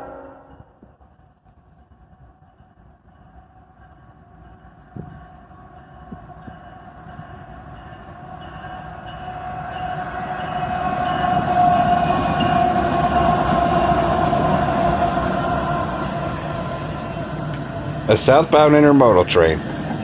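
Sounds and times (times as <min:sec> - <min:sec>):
steady high tone: 0:00.0 - 0:00.7
train engines and wheels rumbling: 0:00.0 - 0:20.0.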